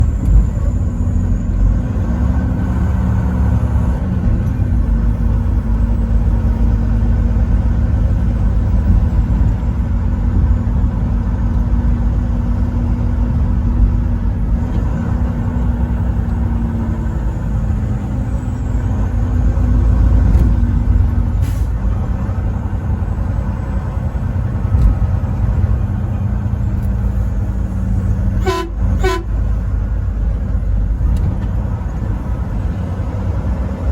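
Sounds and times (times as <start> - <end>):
truck engine and road noise: 0.0 - 33.9
truck air horn blasts: 28.3 - 29.6.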